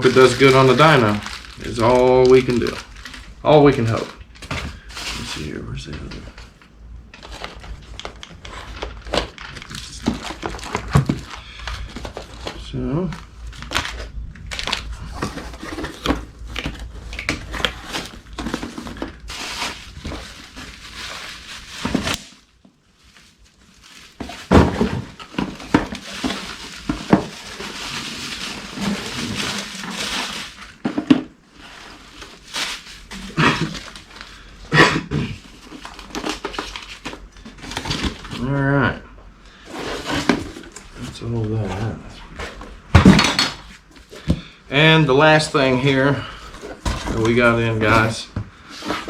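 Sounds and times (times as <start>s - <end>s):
packaging rustling and crinkling: 0.0s - 49.0s
engine parts clinking and thunking: 42.9s - 43.7s.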